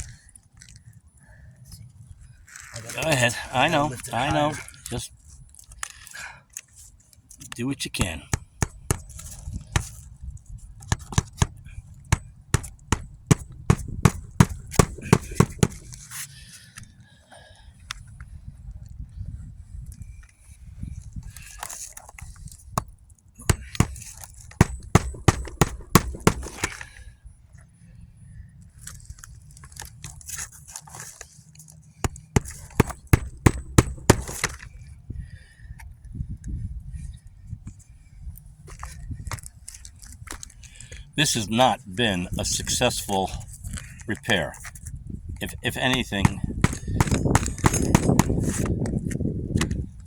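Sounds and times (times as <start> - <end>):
hammer striking nails: 8.0 - 10.0, 10.9 - 16.0, 22.8 - 27.0, 32.1 - 34.7, 45.8 - 48.8.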